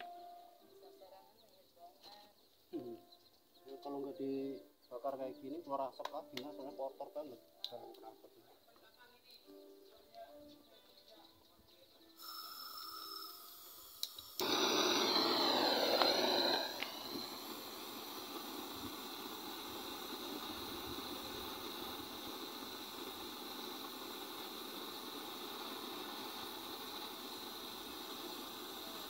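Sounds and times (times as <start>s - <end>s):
gas torch flame hissing: 12.2s - 29.0s
loud rushing flame: 14.4s - 29.0s.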